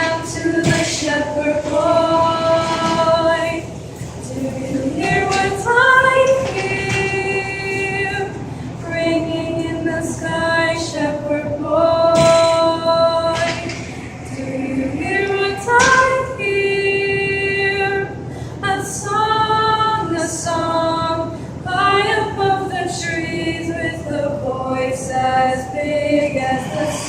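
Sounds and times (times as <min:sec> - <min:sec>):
choir singing a cappella: 0:00.0 - 0:27.0.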